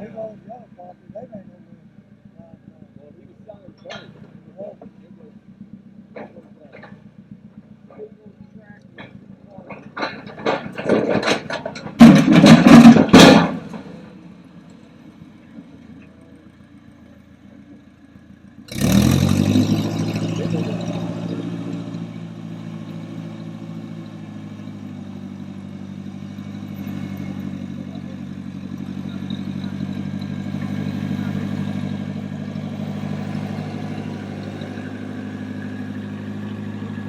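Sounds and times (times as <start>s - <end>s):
engine starting and idling: 6.1s - 14.2s
loud clatter: 8.9s - 14.2s.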